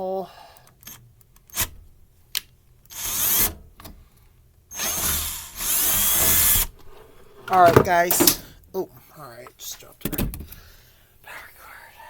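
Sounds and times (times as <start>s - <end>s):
power drill drilling sheet metal: 2.9s - 3.6s, 4.7s - 6.8s.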